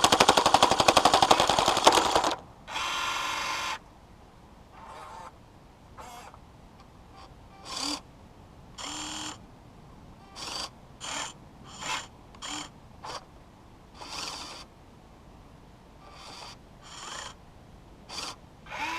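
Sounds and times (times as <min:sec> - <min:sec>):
electric motors whining: 0:18.1 - 0:18.9.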